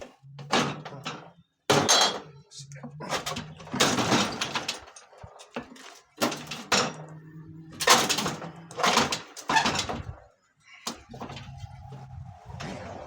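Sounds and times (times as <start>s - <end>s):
metal clanking and scraping: 0.0s - 10.3s, 10.9s - 13.0s
faint low hum: 9.8s - 13.0s.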